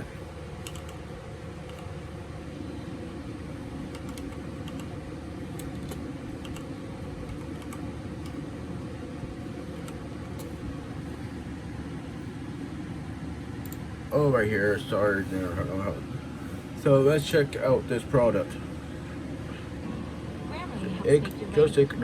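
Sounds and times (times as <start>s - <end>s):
low mechanical hum: 0.0s - 22.0s
keyboard and mouse clicks: 0.6s - 1.0s, 3.9s - 4.9s, 5.6s - 8.4s, 9.8s - 10.5s.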